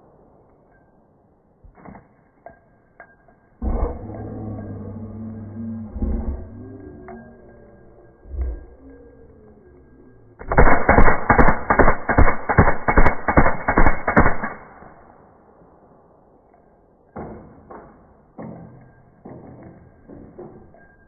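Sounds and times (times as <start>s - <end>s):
sharp single reports: 8.9s - 15.2s
slow motion rifle shots: 10.4s - 18.2s.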